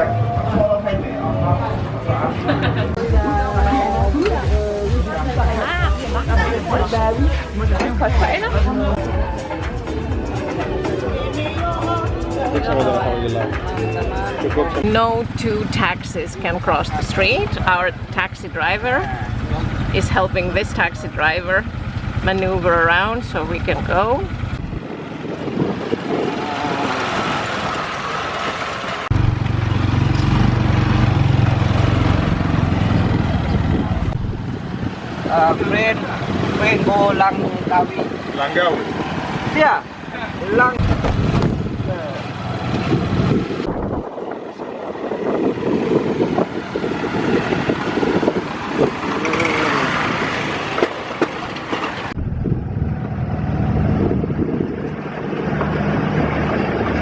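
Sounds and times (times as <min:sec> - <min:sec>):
low engine drone: 0:00.0 - 0:11.5, 0:14.8 - 0:37.4, 0:38.8 - 0:57.0
rattling road noise: 0:00.0 - 0:13.8, 0:14.4 - 0:57.0
small car engine running: 0:44.5 - 0:57.0.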